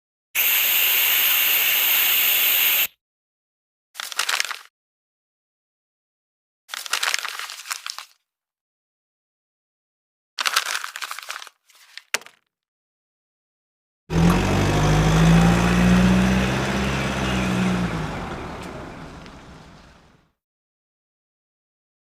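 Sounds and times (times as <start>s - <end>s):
loud engine-like drone: 14.1s - 20.2s.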